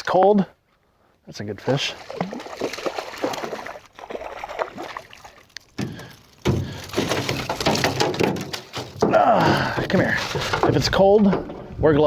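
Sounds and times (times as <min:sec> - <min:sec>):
water splashing: 0:01.5 - 0:10.8.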